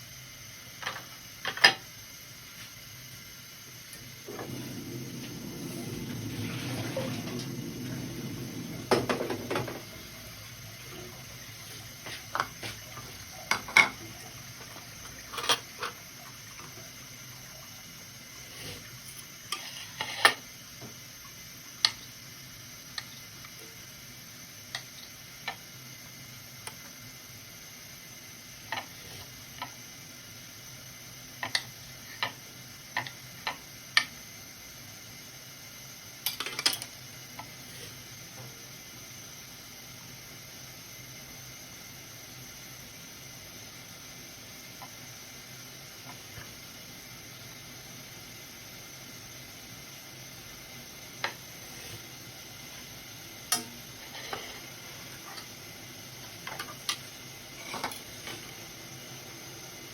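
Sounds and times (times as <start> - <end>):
water running from tap: 4.4 - 19.1.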